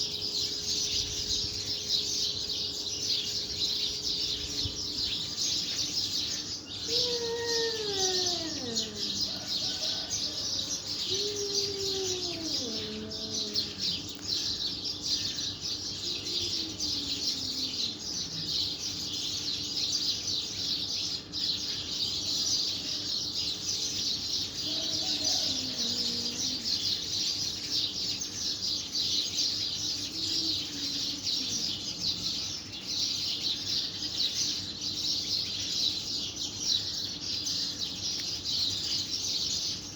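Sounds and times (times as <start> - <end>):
cat yowling: 6.8 - 14.2, 16.0 - 18.5, 24.6 - 26.9, 30.0 - 32.0.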